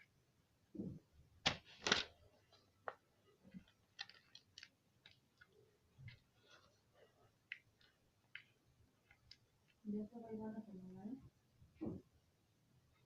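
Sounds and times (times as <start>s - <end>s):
small handling noises: 0.0s - 10.0s.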